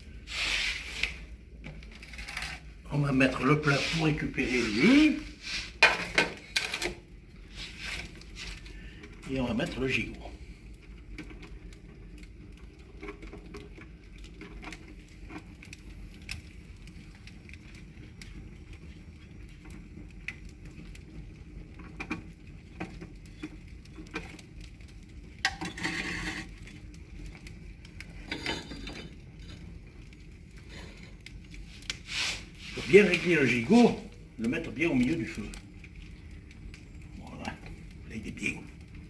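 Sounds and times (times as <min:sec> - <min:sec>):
fire hiss: 0:00.0 - 0:01.4, 0:02.9 - 0:06.6, 0:07.4 - 0:10.9, 0:30.5 - 0:38.7
wood fire crackling: 0:00.0 - 0:39.0.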